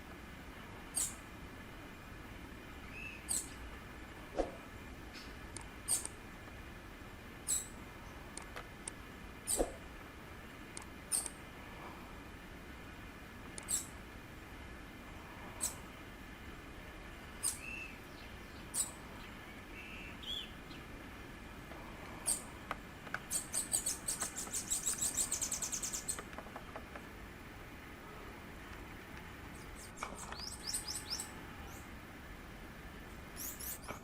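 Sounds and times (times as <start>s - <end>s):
bird high trill: 23.3s - 26.2s.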